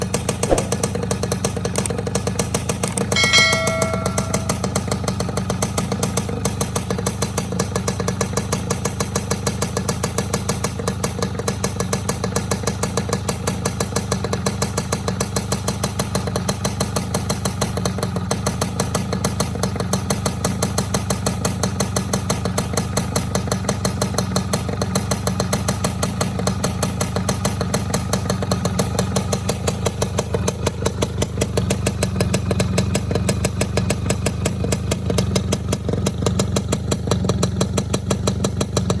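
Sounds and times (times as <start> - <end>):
two-stroke engine idling: 22.0 - 39.0.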